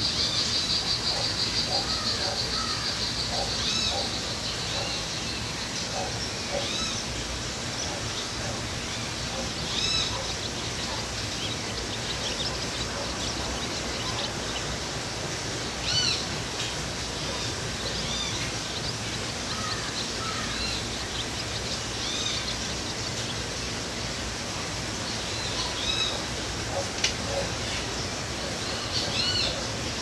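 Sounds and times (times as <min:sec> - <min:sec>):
birds chirping: 0:00.0 - 0:30.0
steady background hiss: 0:00.0 - 0:30.0.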